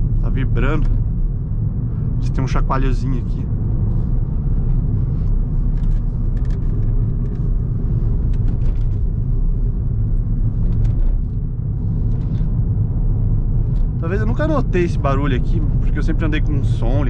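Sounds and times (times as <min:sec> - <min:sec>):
engine and road rumble: 0:00.0 - 0:17.0.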